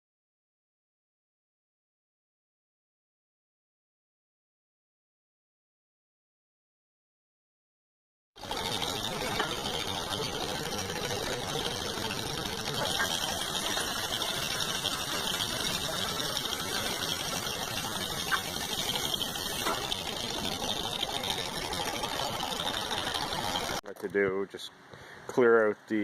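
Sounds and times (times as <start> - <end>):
tractor engine running: 8.4 - 23.8
tractor dragging gravel: 8.4 - 24.2.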